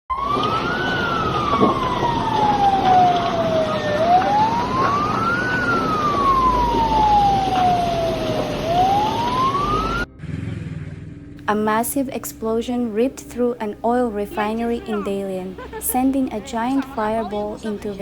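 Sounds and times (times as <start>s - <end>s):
emergency vehicle siren wailing: 0.1s - 11.2s
street noise: 0.1s - 18.0s.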